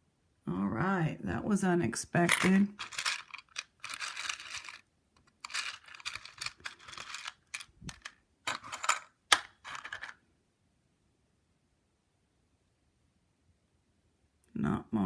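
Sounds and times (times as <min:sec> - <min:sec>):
beads clicking and rattling: 0:02.3 - 0:10.2.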